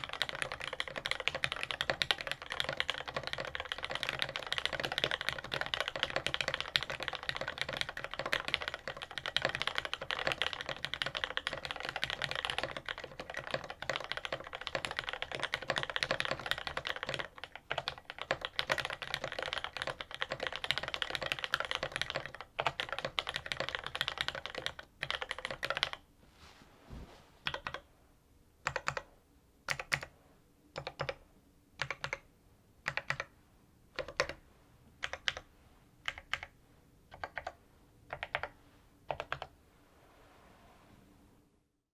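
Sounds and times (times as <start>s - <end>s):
fast typing on mechanical keyboard: 0.0s - 26.0s, 27.4s - 27.8s, 28.6s - 29.1s, 29.7s - 30.1s, 30.8s - 31.2s, 31.8s - 32.2s, 32.8s - 33.3s, 34.0s - 34.4s, 35.0s - 35.4s, 36.0s - 36.5s, 37.1s - 39.5s.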